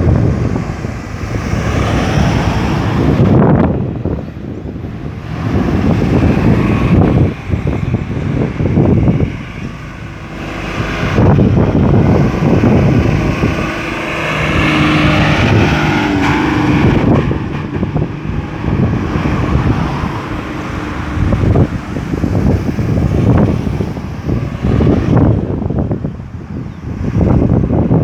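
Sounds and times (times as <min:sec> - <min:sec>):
cars passing: 0:00.0 - 0:28.0
vehicle engine hum: 0:00.0 - 0:28.0
wind buffeting microphone: 0:00.0 - 0:28.0.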